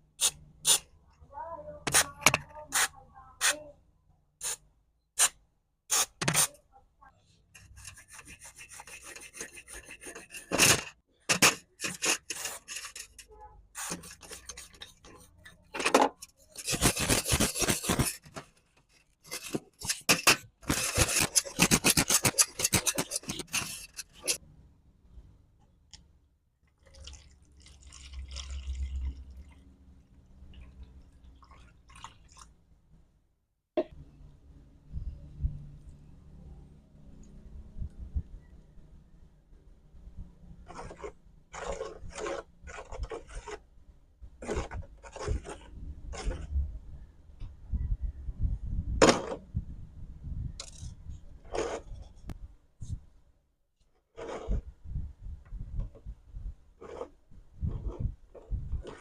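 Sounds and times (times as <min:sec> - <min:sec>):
harsh rasping scrapes on metal: 0:07.6 - 0:10.9, 0:11.8 - 0:15.5, 0:16.3 - 0:18.3, 0:19.3 - 0:24.4.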